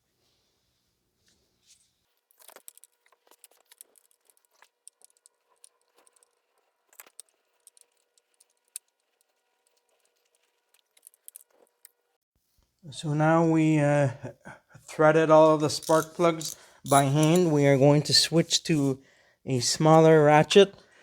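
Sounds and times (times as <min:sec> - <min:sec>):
metal socket clicks and clinks: 0:15.8 - 0:17.5.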